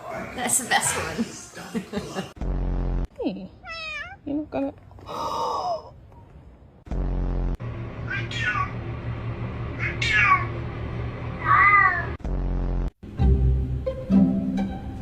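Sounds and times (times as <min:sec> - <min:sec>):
cat meowing: 0:03.6 - 0:04.2, 0:11.4 - 0:12.2
low background music: 0:13.0 - 0:15.0.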